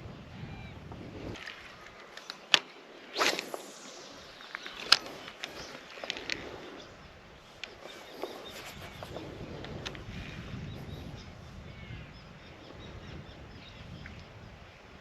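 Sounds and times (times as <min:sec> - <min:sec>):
sharp clicks: 0:01.4 - 0:06.9
short swish: 0:03.0 - 0:06.6.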